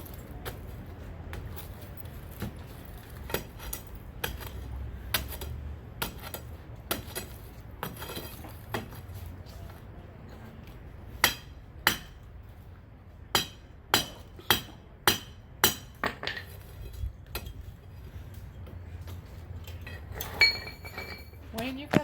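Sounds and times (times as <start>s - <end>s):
hammer striking steel chisel: 11.2s - 12.2s, 13.3s - 16.2s
metal ringing: 19.7s - 21.7s.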